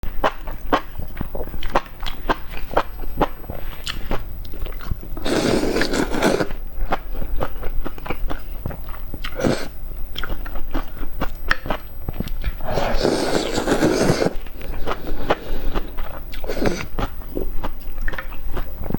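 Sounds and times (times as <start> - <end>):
person biting and chewing: 10.2 - 18.9.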